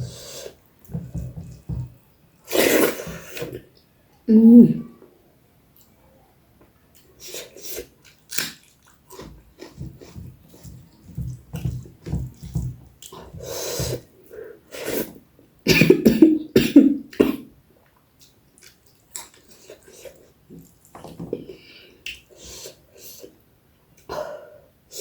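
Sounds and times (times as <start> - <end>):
person slurping: 2.5 - 3.6
person chewing and smacking: 8.0 - 14.0, 17.8 - 21.2.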